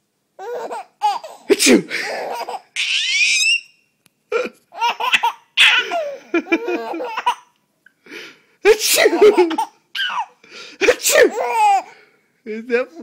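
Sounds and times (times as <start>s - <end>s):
baby laughing: 0.4s - 3.7s, 4.4s - 7.6s, 8.7s - 11.9s.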